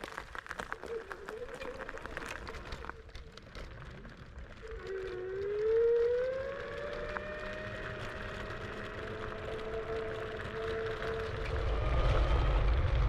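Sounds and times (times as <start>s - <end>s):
electric scooter motor whine: 3.8s - 13.0s.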